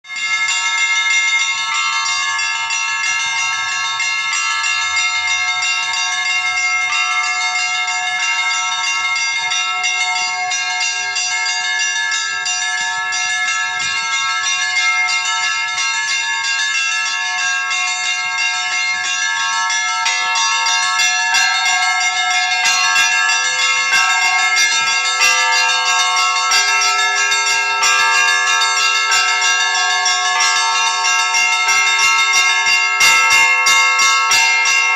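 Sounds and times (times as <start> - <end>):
church bells ringing: 0.0 - 34.9.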